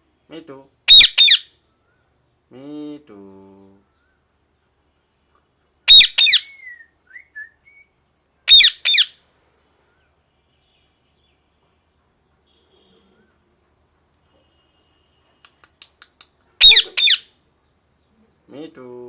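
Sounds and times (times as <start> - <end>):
parrot screeching: 0.9 - 1.5, 5.9 - 6.6, 8.5 - 9.2, 16.6 - 17.3.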